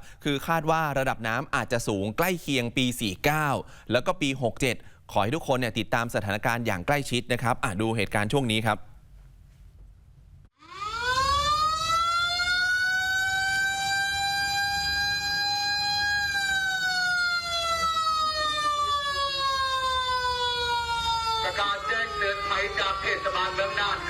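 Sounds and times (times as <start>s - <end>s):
flood warning siren wailing: 10.6s - 24.0s.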